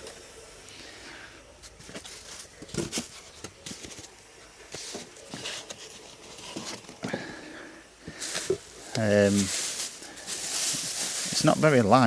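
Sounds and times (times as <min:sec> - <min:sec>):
packaging rustling: 0:08.1 - 0:12.0.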